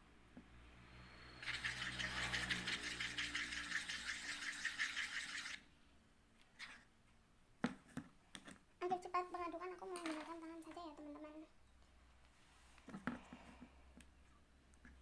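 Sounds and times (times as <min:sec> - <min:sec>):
slime stirred rapidly clicking: 0:01.4 - 0:05.6.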